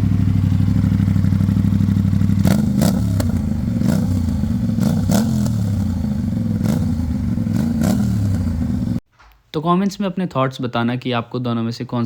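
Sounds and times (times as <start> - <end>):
motorcycle engine idling: 0.0 - 9.0
sharp exhaust cracks: 0.0 - 9.0.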